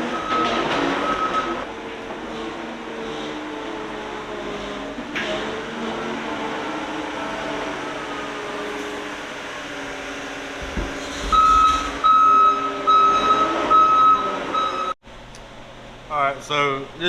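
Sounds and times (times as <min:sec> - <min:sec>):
backup alarm beeping: 0:00.0 - 0:01.7, 0:10.6 - 0:15.0
diesel engine running: 0:00.0 - 0:17.0.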